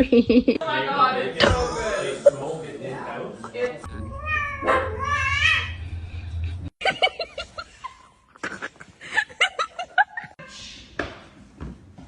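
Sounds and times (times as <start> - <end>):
person laughing: 0.0 - 0.6
cat meowing: 3.9 - 5.8.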